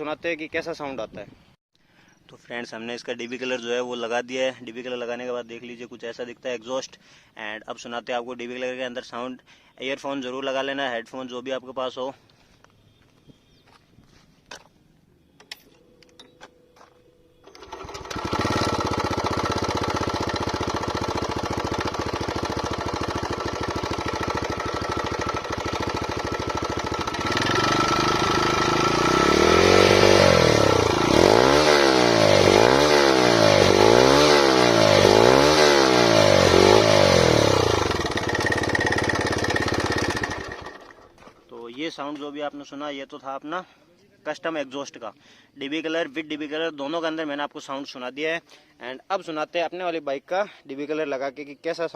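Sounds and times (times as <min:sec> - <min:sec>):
motorcycle engine idling and revving: 0:16.8 - 0:41.4.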